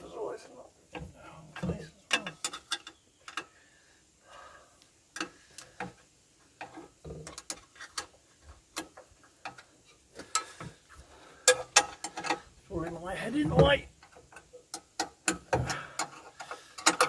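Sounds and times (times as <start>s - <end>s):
hand tools and metal parts clicking: 0.9s - 3.7s, 5.1s - 17.0s.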